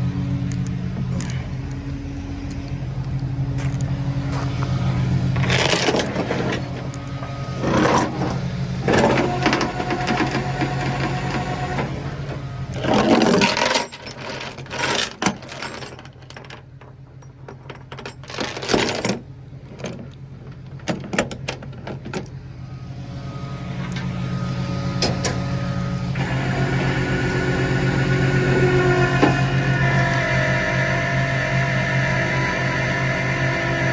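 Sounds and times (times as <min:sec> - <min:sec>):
mechanical drone: 0:00.0 - 0:15.9, 0:22.5 - 0:33.9
truck engine humming: 0:00.0 - 0:33.9
metal chain clinking: 0:05.4 - 0:06.6, 0:12.8 - 0:16.6, 0:17.2 - 0:19.2.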